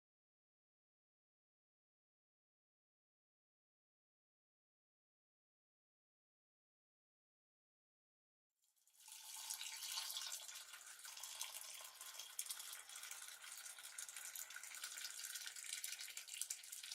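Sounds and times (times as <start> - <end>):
hot water pouring into mug: 8.9 - 16.9.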